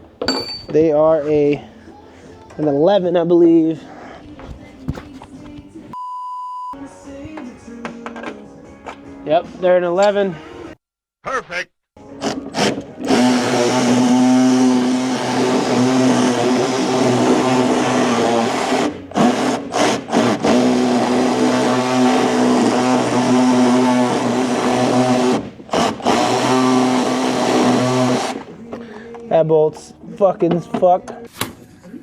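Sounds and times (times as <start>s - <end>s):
power tool motor running: 12.2s - 28.5s.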